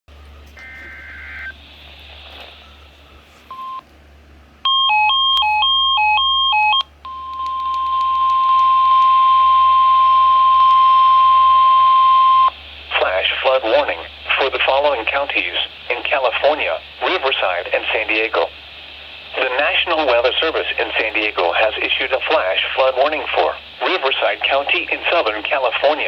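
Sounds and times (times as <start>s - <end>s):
steady warning alarm tone: 0.1s - 3.8s, 4.7s - 26.0s
data burst tones: 0.3s - 3.8s.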